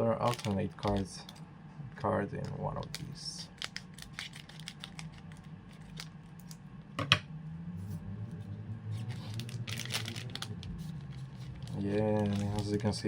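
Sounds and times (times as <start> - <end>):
cards clicking and rustling: 0.2 - 1.4, 2.4 - 6.6, 9.1 - 12.9.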